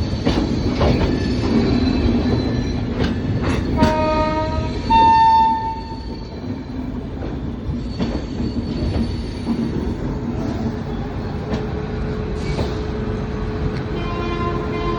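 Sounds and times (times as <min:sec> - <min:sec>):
train rumbling over rails: 0:00.0 - 0:14.9
train horn blast: 0:03.8 - 0:06.0, 0:14.0 - 0:14.9.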